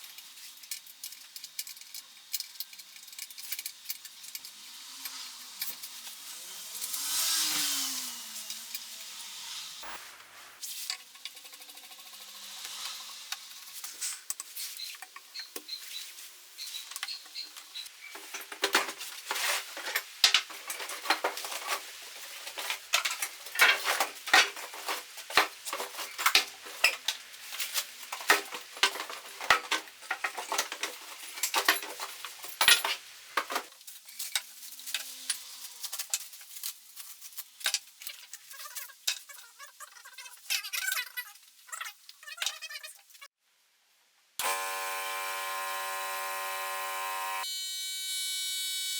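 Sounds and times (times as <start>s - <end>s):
hard parts clicking and clattering: 0.0s - 4.6s, 18.1s - 39.4s.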